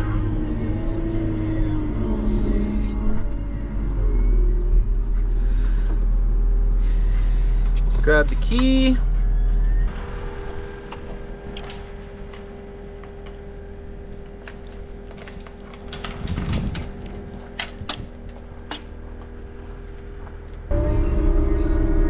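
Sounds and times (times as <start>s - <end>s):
keys rattling and clicking: 13.0s - 20.7s.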